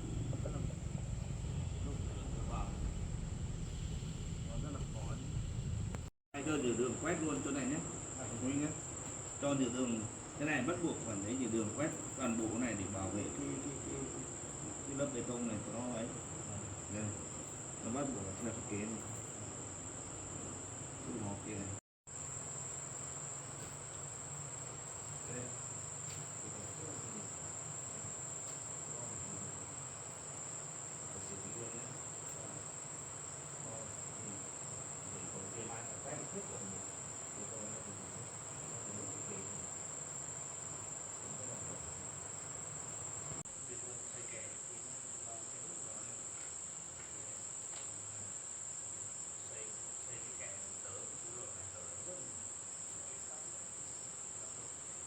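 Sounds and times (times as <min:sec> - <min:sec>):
faint low hum: 0:00.0 - 0:46.3
insects chirping chorus: 0:00.0 - 0:55.0.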